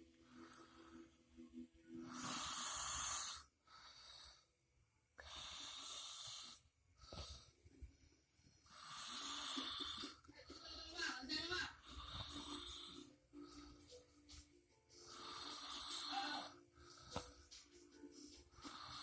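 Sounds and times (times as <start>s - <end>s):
person snoring: 2.0s - 4.4s, 5.2s - 7.4s, 8.6s - 11.0s, 11.8s - 13.8s, 15.0s - 17.5s, 18.6s - 19.0s.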